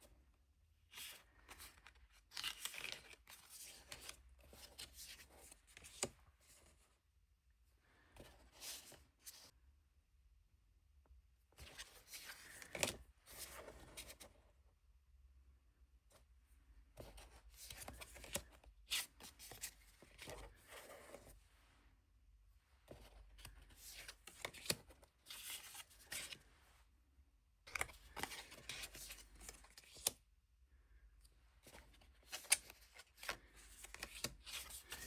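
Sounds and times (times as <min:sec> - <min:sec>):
cards sliding and rustling: 0:00.9 - 0:06.7, 0:11.6 - 0:14.3, 0:17.0 - 0:21.4, 0:22.9 - 0:26.5, 0:27.7 - 0:30.2, 0:31.6 - 0:35.0.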